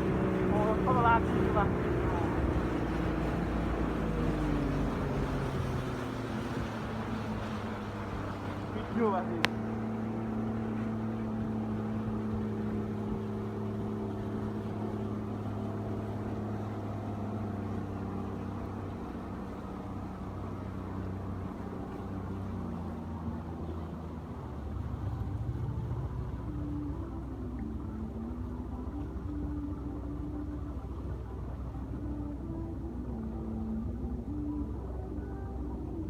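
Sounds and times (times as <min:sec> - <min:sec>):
loud low rumble: 0:00.0 - 0:36.0
tugboat engine humming: 0:00.0 - 0:36.0.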